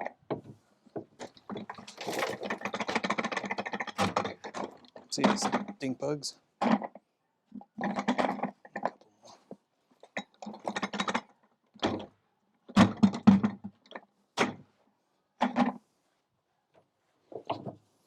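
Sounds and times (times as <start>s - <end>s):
short knocks and clatters: 0.0s - 5.9s.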